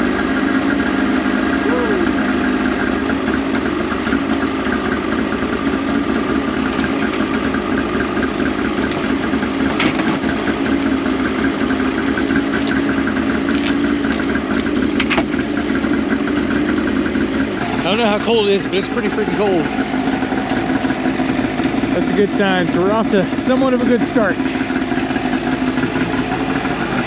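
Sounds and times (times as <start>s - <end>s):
snowmobile engine idling: 0.0s - 27.0s.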